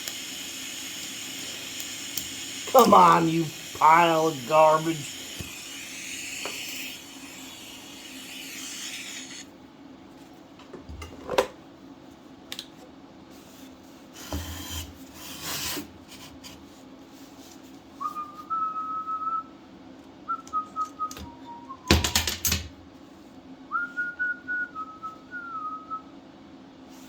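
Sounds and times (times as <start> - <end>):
welding arc hissing: 0.0 - 9.5
person whistling: 18.0 - 19.5, 20.3 - 22.0, 23.7 - 26.0.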